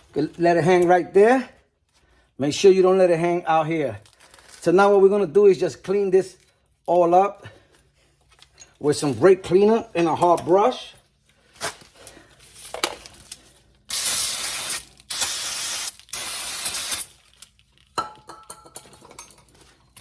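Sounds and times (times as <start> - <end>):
aerosol spray hissing: 13.9 - 17.1.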